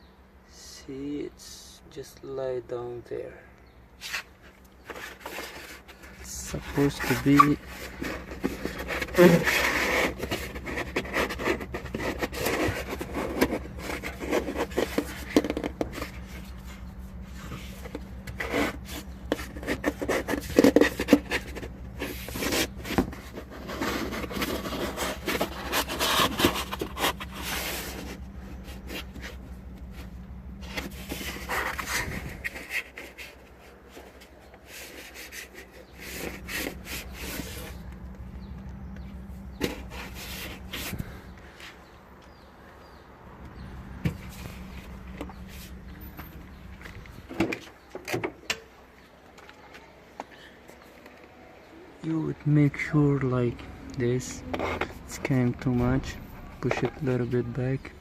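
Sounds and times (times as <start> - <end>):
hands scraping plastic trim: 4.0 - 38.0.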